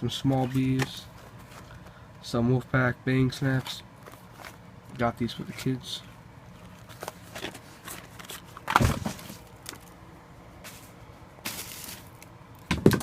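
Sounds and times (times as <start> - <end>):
packaging rustling: 11.5 - 12.3
packages knocking: 12.7 - 13.0.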